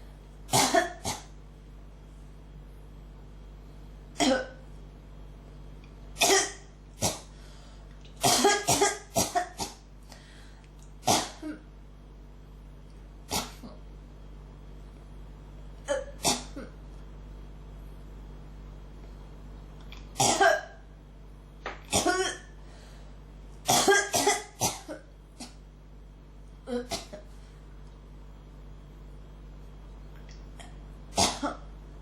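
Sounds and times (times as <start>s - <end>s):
person coughing: 0.5s - 1.4s, 4.2s - 4.6s, 6.2s - 7.3s, 8.2s - 9.8s, 11.0s - 11.7s, 13.3s - 13.8s, 15.8s - 16.8s, 20.2s - 20.8s, 21.9s - 22.6s, 23.7s - 25.6s, 26.7s - 27.3s, 30.6s - 31.7s.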